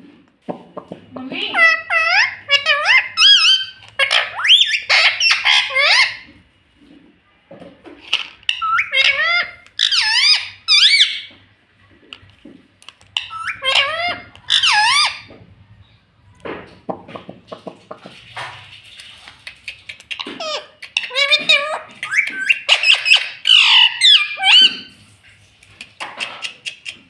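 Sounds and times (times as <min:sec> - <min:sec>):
parakeet chattering and squawking: 0:01.2 - 0:06.4, 0:08.1 - 0:11.4, 0:12.9 - 0:15.4, 0:18.4 - 0:25.0, 0:25.7 - 0:27.0.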